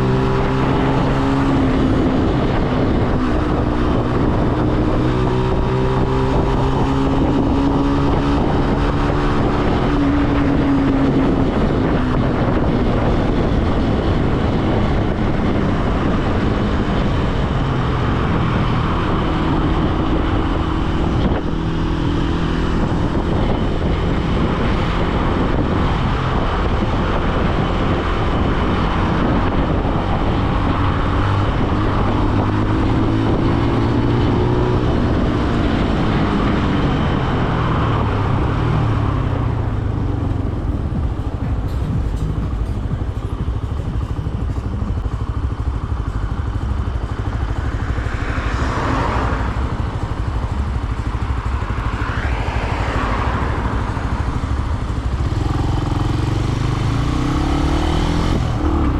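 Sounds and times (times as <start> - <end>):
motorcycle engine in traffic: 0.0 - 58.9
wind noise on microphone: 0.0 - 58.9.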